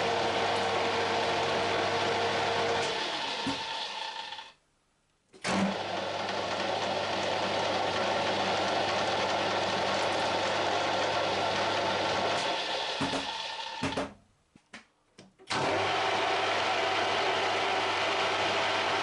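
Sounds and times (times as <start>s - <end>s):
machine tool humming: 0.0s - 4.5s.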